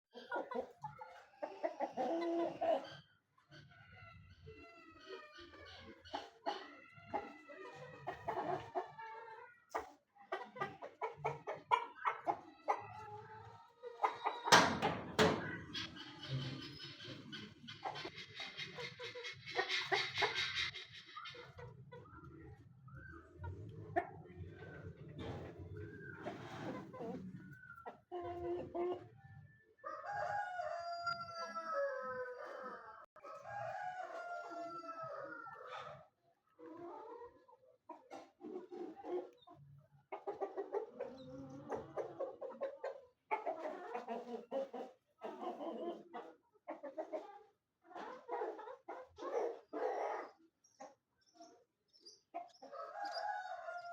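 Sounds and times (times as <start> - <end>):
chickens clucking: 0.1 - 53.9
rooster crowing: 29.8 - 35.5.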